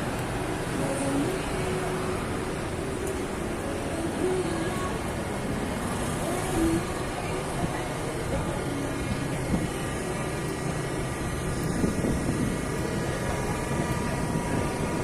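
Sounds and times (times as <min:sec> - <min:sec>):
continuous mechanical hum: 0:00.0 - 0:15.0.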